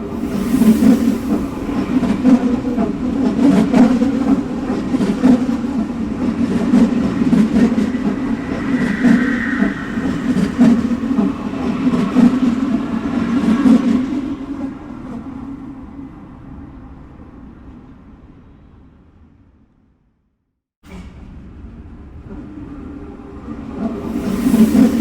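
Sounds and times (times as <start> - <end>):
high squeal: 0.0 - 12.8, 24.0 - 25.0
subway train rumbling: 0.0 - 19.5, 20.9 - 25.0.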